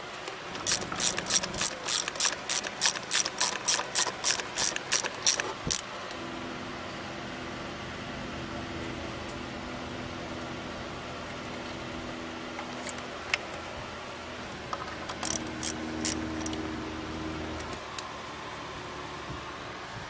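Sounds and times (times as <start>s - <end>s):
fan humming: 0.0s - 20.0s
light clicks and clinks of parts: 14.7s - 16.6s.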